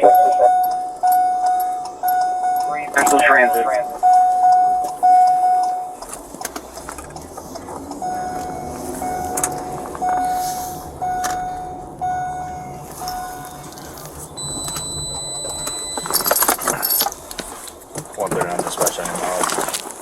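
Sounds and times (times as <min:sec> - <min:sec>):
steady high electronic tone: 0:00.0 - 0:06.0, 0:08.0 - 0:16.6
warning chime beeping: 0:00.0 - 0:06.0, 0:08.0 - 0:17.2
loud rattling and rustling: 0:15.8 - 0:20.0.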